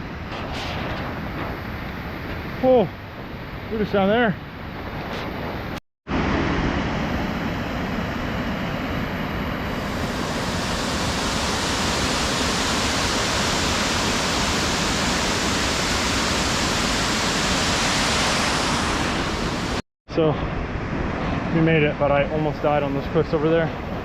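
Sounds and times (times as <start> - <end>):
waterfall roaring: 9.8 - 19.8.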